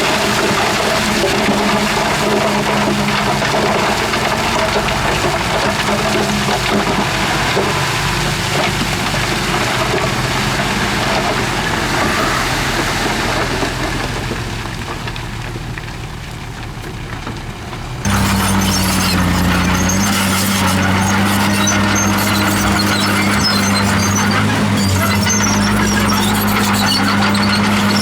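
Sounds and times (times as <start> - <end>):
heavy diesel machinery engine: 0.0 - 15.9, 17.8 - 28.0
steady engine hum: 17.6 - 28.0.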